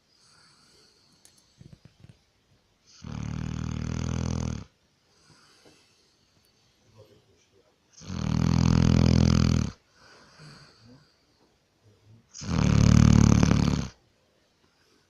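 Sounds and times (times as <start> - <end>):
faint dog breath: 0.0 - 2.3, 5.0 - 7.5, 9.8 - 11.6
dog snoring: 2.9 - 4.8, 7.9 - 11.0, 12.3 - 14.0.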